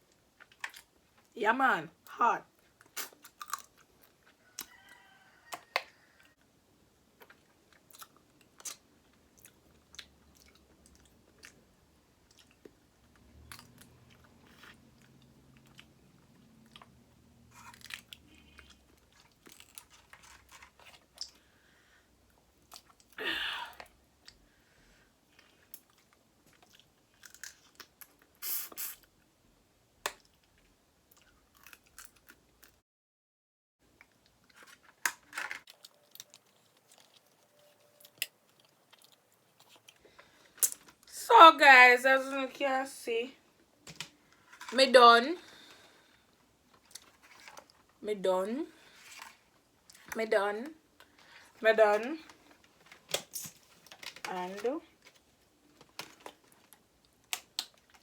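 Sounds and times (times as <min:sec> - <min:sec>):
person chewing food: 0:02.6 - 0:04.8, 0:07.2 - 0:23.2, 0:24.2 - 0:28.4, 0:30.0 - 0:32.8, 0:35.7 - 0:41.1, 0:45.5 - 0:48.0.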